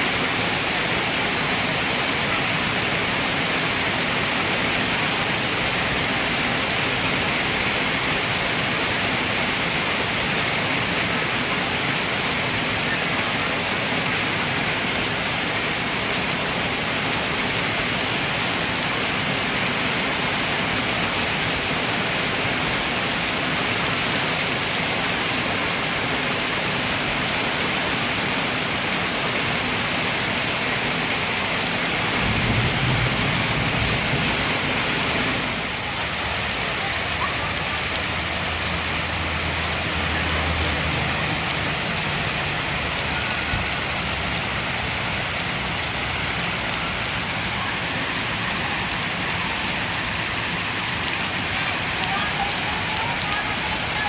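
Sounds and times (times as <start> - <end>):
heavy rain pouring: 0.0 - 54.0.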